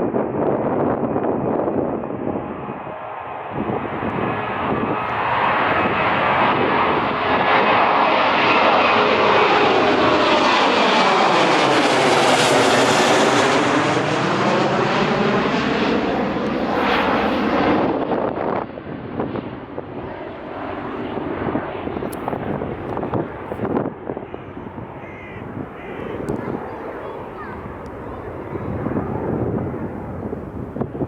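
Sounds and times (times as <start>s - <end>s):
airliner engines passing: 0.0s - 31.0s.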